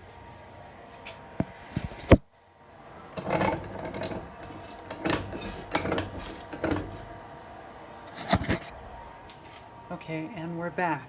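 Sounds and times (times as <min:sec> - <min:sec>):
hard objects clattering and rubbing: 0:01.1 - 0:02.3, 0:03.0 - 0:09.7.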